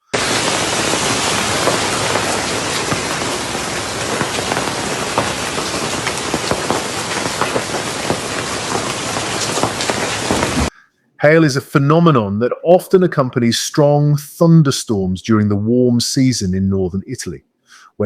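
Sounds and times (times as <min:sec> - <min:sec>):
heavy rain hiss: 0:00.0 - 0:11.5
hailstones clicking on hard surfaces: 0:00.1 - 0:10.7.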